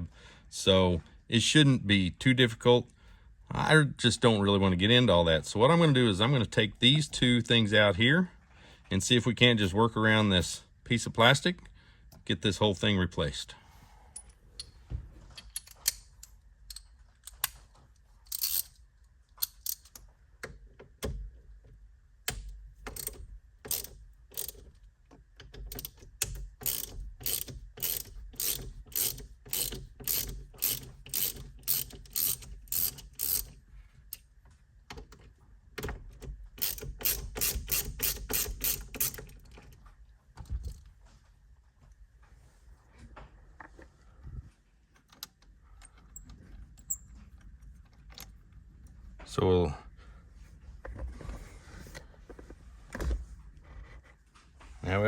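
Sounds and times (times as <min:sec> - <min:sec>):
hand ratchet clicking: 0:18.3 - 0:18.7, 0:19.4 - 0:20.0, 0:22.3 - 0:24.8, 0:25.4 - 0:34.2, 0:36.6 - 0:39.6.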